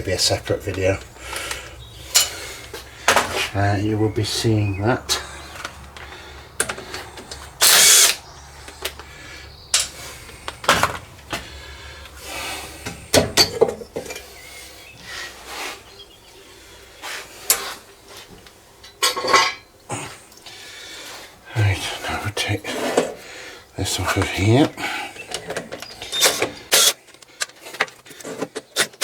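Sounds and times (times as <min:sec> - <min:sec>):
power driver running: 0:05.3 - 0:09.3, 0:24.2 - 0:27.0.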